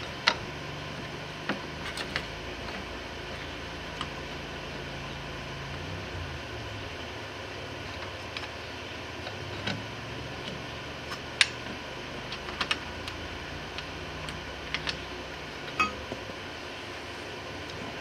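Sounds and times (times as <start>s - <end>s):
metal tools clicking and tapping: 15.7s - 16.2s.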